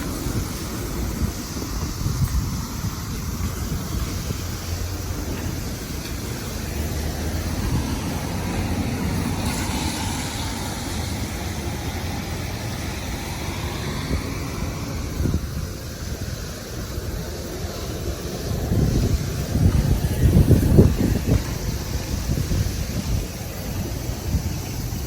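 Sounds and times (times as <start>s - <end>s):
strong wind buffeting microphone: 0.0s - 25.0s.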